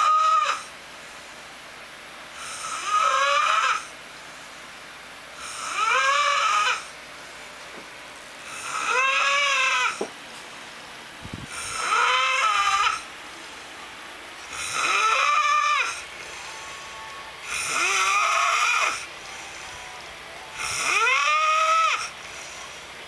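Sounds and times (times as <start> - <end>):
man snoring with whining tone: 0.0 - 0.8, 2.3 - 3.9, 5.4 - 7.0, 8.4 - 10.1, 11.5 - 13.1, 14.4 - 22.9.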